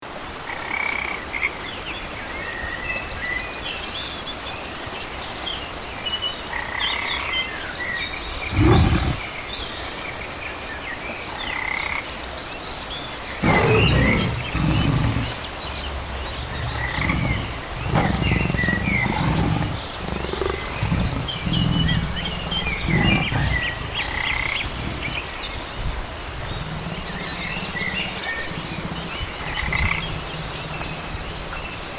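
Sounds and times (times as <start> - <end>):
wolf growling: 8.4 - 9.3, 13.4 - 31.6
small creatures chirping and trilling: 13.4 - 25.4.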